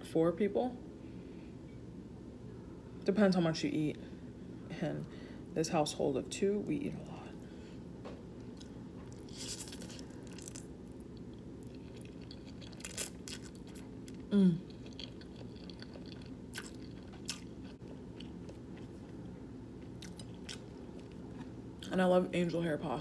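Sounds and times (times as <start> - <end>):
steady low hum: 0.0 - 23.0
person chewing food: 8.4 - 21.9
crunchy bites: 8.6 - 11.0, 11.6 - 18.6.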